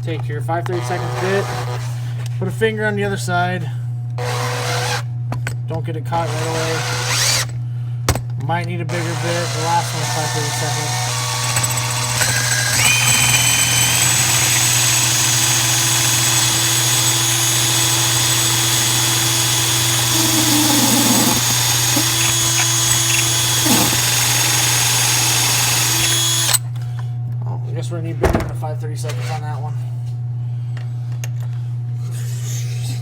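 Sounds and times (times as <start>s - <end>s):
power drill drilling metal: 4.2s - 5.1s, 6.2s - 7.5s, 8.9s - 26.6s.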